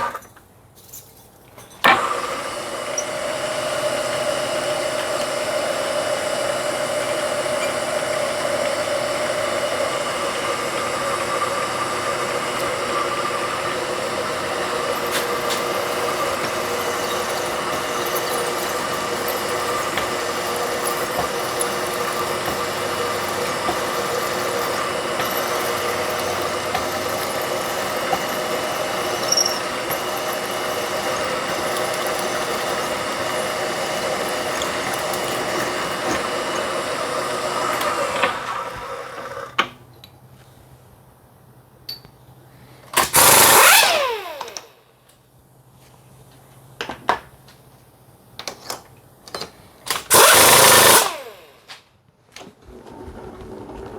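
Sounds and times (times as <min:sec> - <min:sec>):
milling machine spindle running: 0:01.9 - 0:39.6, 0:43.0 - 0:44.6, 0:50.0 - 0:51.6
cutter high-pitched squeal: 0:14.0 - 0:36.7.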